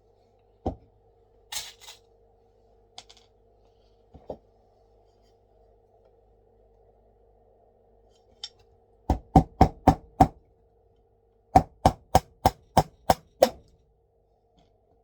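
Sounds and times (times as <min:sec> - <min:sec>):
hammer driving nails into wood: 0:09.1 - 0:10.4, 0:11.6 - 0:13.7.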